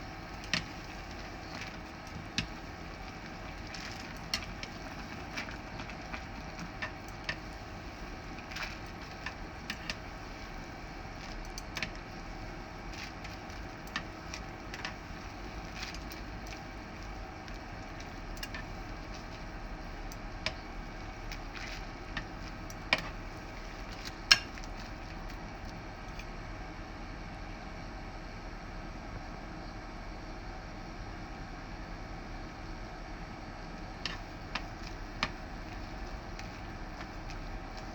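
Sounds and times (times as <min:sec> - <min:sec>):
steady background hiss: 0:00.0 - 0:26.2.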